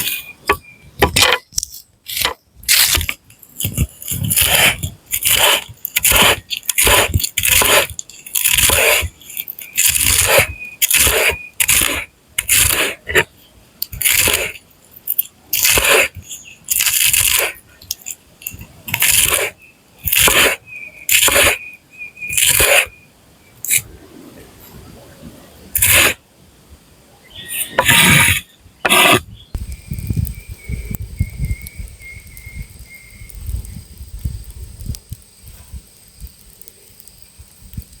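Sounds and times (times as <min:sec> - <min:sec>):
rough scraping strokes: 0:00.0 - 0:13.3, 0:13.9 - 0:14.6, 0:15.2 - 0:21.6, 0:22.3 - 0:22.9, 0:25.8 - 0:26.2, 0:27.4 - 0:29.2.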